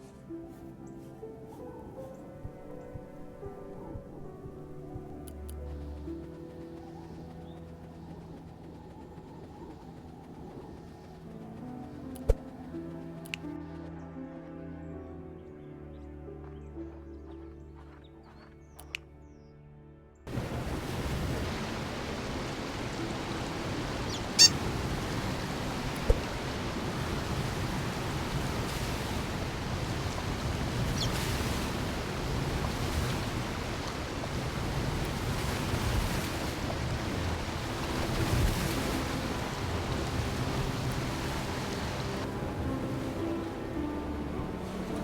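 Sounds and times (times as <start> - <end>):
steady rushing noise: 4.3 - 13.3, 20.3 - 45.0.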